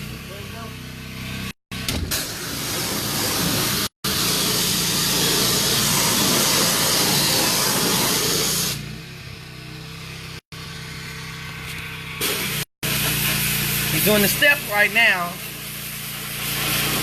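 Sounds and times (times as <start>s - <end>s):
washer engine drone: 0.0s - 17.0s
pressure washer water jet hiss: 2.1s - 8.8s, 12.2s - 17.0s.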